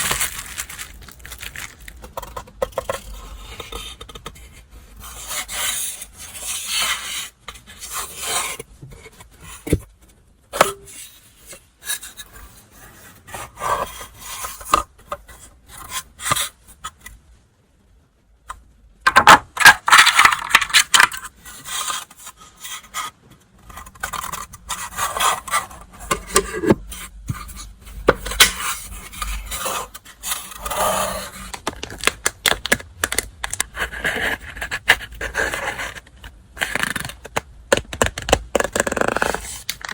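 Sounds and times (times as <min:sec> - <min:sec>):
paper packaging crinkling: 0:00.0 - 0:03.0, 0:19.6 - 0:21.2.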